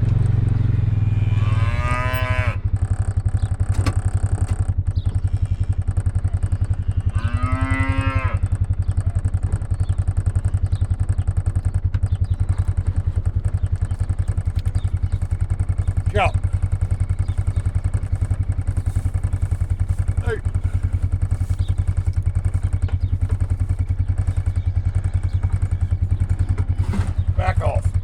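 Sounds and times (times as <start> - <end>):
engine idling with rapid chug: 0.0 - 28.0
cattle mooing: 1.0 - 2.7, 6.8 - 8.5, 15.9 - 27.9.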